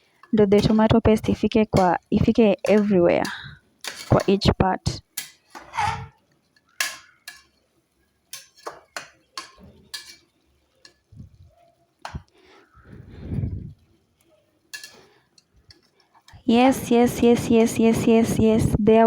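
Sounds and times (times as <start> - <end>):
spoon scraping cooking pot: 0.4 - 4.5, 5.2 - 6.2, 8.3 - 11.0
low rumble: 13.0 - 13.8.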